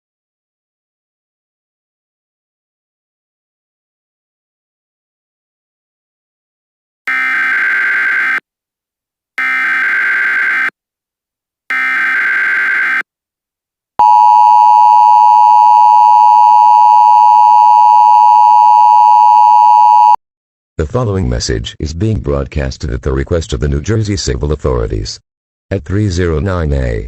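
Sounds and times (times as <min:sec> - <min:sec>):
data tone bursts: 0:14.0 - 0:20.2
two-tone attention signal: 0:14.0 - 0:20.2.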